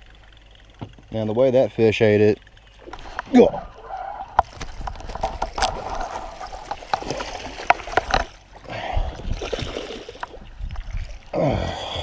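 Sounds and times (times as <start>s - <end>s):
water splashing and trickling: 0.0s - 12.0s
sharp clicks and knocks: 4.4s - 8.4s.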